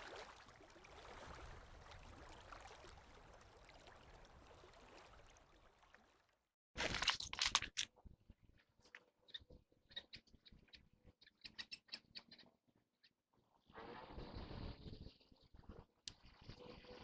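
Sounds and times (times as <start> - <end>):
faint river water running: 0.0 - 7.9
rustling: 6.8 - 7.9.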